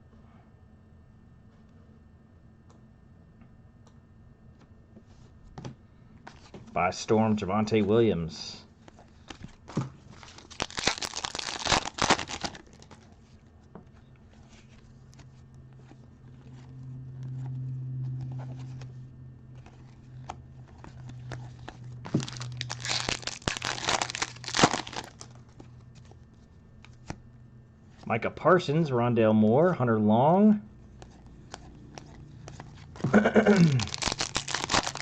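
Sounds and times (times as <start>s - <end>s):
plastic wrappers tearing and crinkling: 9.1s - 13.1s, 20.8s - 25.6s, 31.5s - 35.0s.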